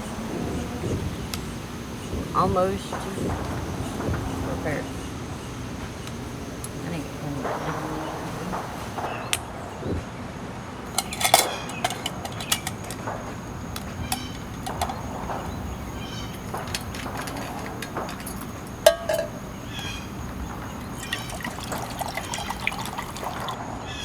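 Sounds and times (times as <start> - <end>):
steady hiss: 10.8 - 23.6
metal cookware clinking: 10.9 - 23.6.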